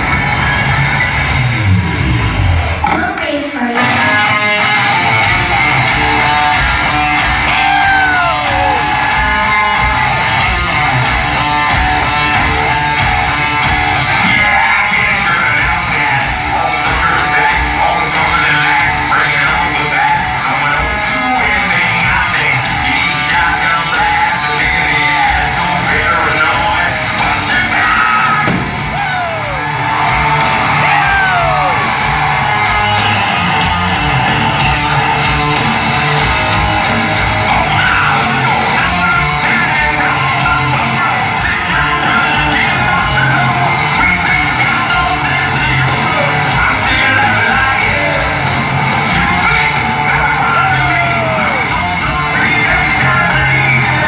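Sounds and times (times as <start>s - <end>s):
live rock band playing: 0.0s - 54.0s
people yelling: 0.0s - 54.0s
person singing: 37.2s - 54.0s.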